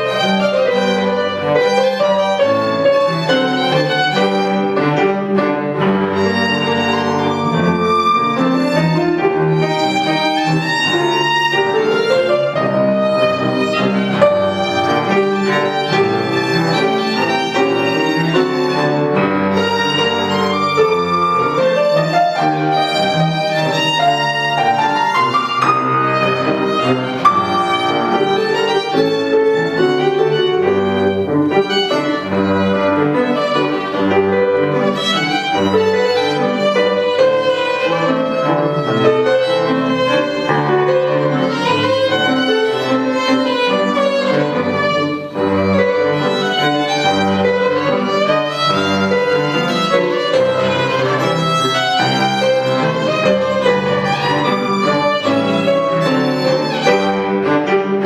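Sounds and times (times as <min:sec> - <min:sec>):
cello accompaniment: 0:00.0 - 0:58.0
piano accompaniment: 0:00.0 - 0:58.0
violin melody: 0:00.0 - 0:58.0.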